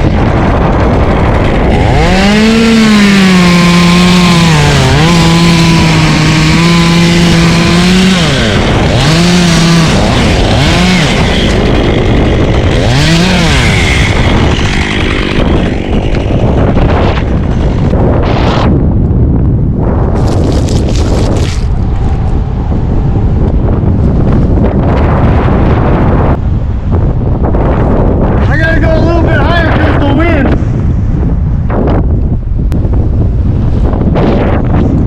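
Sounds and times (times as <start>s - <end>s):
chainsaw revving and cutting: 0.0s - 18.6s, 20.2s - 21.7s
wind on microphone: 0.0s - 35.0s.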